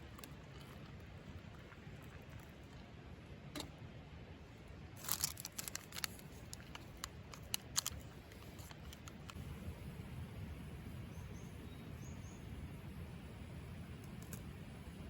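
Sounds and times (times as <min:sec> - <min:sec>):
low steady background noise: 0:00.0 - 0:15.0
small hard objects clinking: 0:05.0 - 0:08.0.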